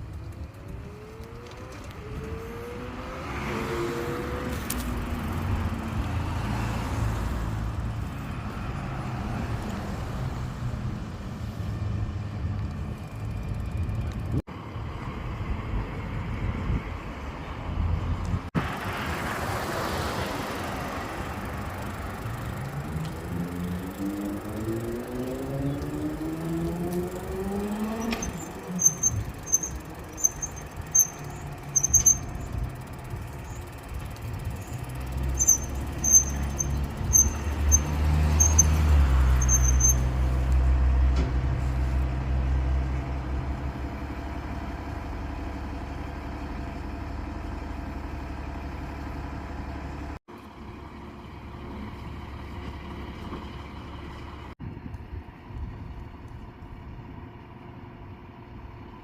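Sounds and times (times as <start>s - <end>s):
diesel engine rumbling: 0.0s - 59.0s
high-pitched squeaks: 27.6s - 32.7s, 34.5s - 40.3s.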